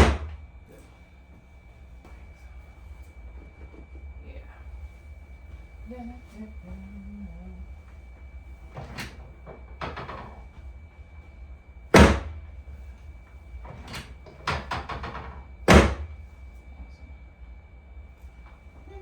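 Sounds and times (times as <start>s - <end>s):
loud sharp thuds: 12.0s - 12.5s, 13.6s - 16.2s.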